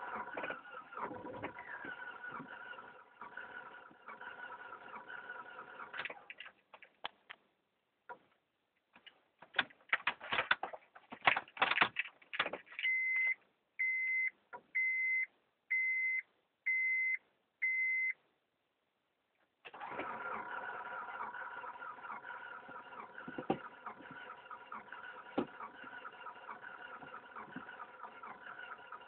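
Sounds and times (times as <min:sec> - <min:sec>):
clicks and knocks: 0:08.9 - 0:12.9
car warning chime beeps: 0:12.9 - 0:18.2.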